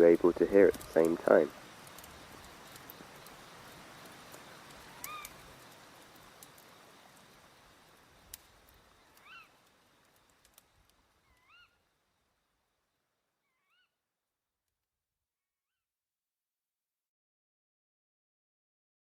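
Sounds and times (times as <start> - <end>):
sharp crackles: 0.0 - 12.6
soft steady rushing hiss: 0.0 - 14.0
rising and falling bird call: 4.4 - 5.4, 9.0 - 9.6, 11.2 - 11.8, 13.4 - 14.0.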